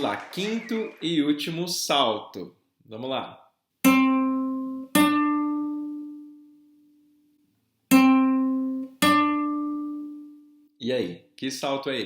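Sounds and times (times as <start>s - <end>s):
plucked string notes: 3.9s - 6.4s, 7.9s - 10.4s.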